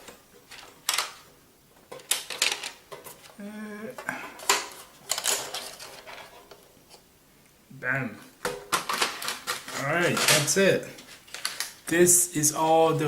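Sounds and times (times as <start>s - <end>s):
colored pencils clattering together: 0.0s - 1.3s, 1.9s - 3.4s, 4.0s - 6.6s, 8.4s - 12.0s.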